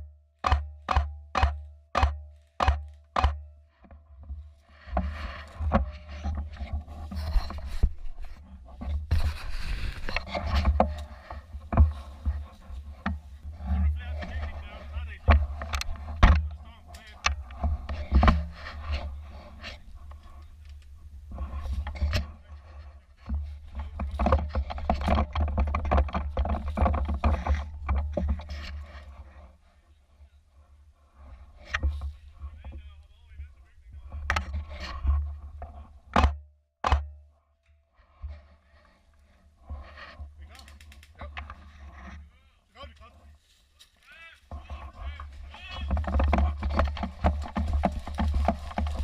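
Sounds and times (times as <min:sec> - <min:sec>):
sharp knocks: 0:00.4 - 0:04.0, 0:36.1 - 0:37.2
rustling: 0:02.3 - 0:36.1, 0:38.0 - 0:49.0.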